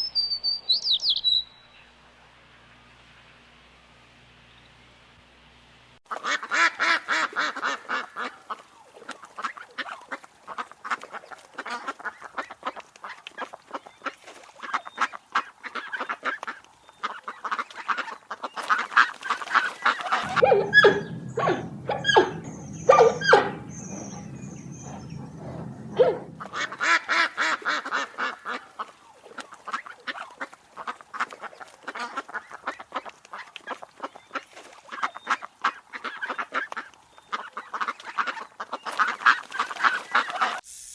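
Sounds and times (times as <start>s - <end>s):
low steady hum: 20.2s - 26.8s
geese honking: 20.2s - 26.9s.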